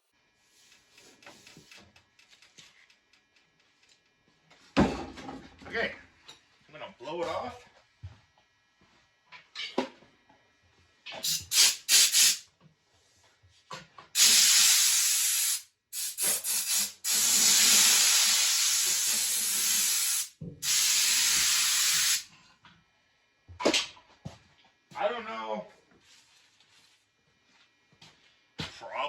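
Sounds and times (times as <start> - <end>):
compressed air hissing from nozzle: 11.2 - 12.4, 14.2 - 22.3.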